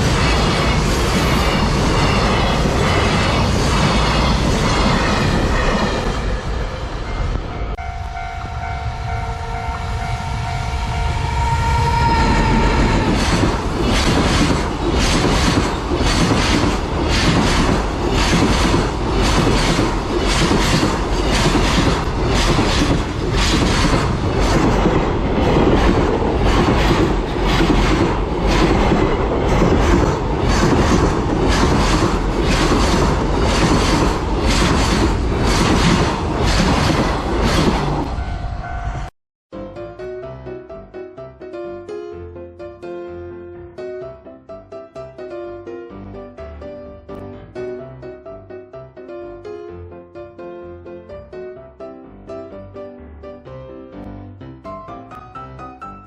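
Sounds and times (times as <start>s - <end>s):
rattling train wheels: 0.0s - 39.1s.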